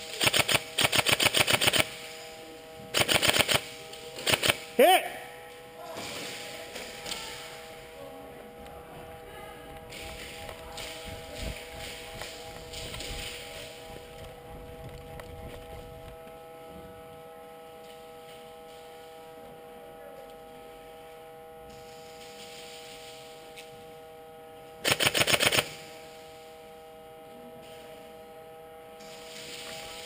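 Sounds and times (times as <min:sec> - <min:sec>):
electrical hum: 0:00.0 - 0:30.0
airsoft gun burst: 0:00.2 - 0:02.1, 0:02.9 - 0:05.0, 0:24.8 - 0:25.9.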